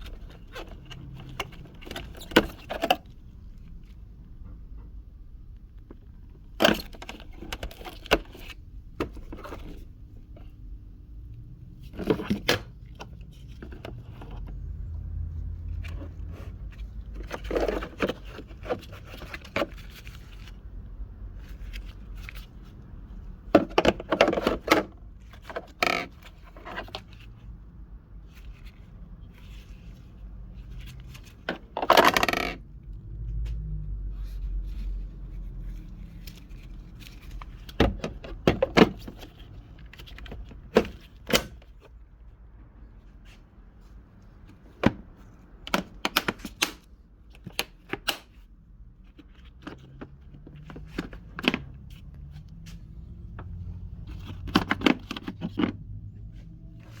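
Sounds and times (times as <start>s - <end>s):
scraping handling noise: 11.6s - 42.2s, 42.8s - 57.0s.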